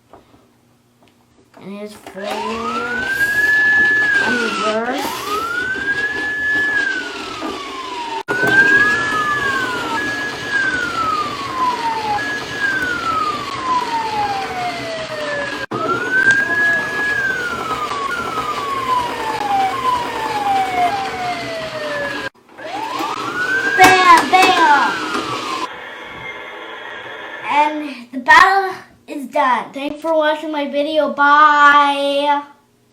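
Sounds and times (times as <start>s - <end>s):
toy police siren: 2.2s - 26.6s.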